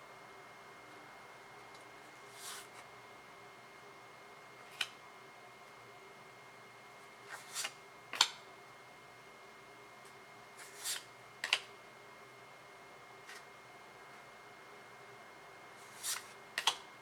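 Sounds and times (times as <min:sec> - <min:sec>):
cards sliding against cards: 0:02.3 - 0:02.9, 0:07.2 - 0:08.3, 0:10.6 - 0:11.7, 0:15.8 - 0:16.8.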